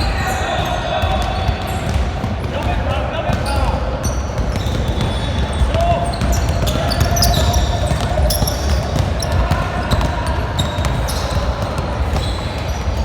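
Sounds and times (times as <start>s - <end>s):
basketball bouncing on court: 0.0s - 13.0s
shoe squeaks: 3.4s - 13.0s.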